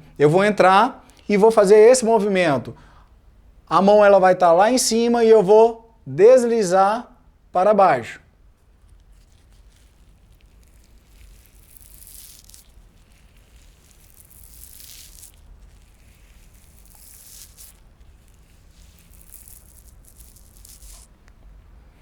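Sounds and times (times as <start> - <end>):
gloved hand rubbing skin: 8.5 - 22.0.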